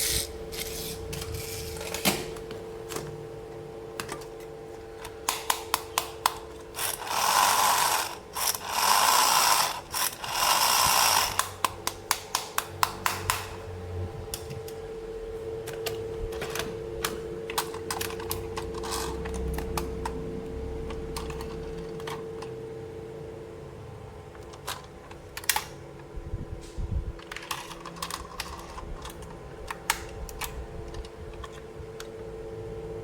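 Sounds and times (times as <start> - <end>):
faint steady hum: 0.0 - 33.0
plastic toy pieces clicking: 27.2 - 31.0.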